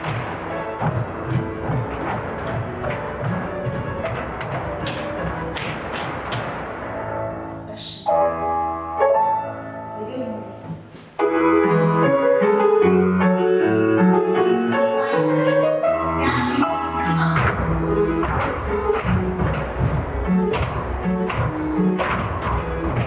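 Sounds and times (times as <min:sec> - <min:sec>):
piano chords accompaniment: 0:00.0 - 0:23.0.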